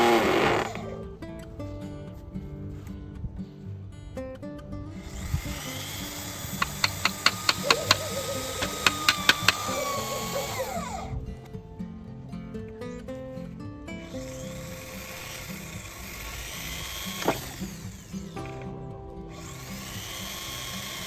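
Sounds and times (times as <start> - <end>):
electric drill running: 0.0 - 1.0, 5.0 - 11.1, 14.2 - 18.5, 19.3 - 21.0
background music: 0.0 - 21.0
sharp clicks: 5.5 - 10.6.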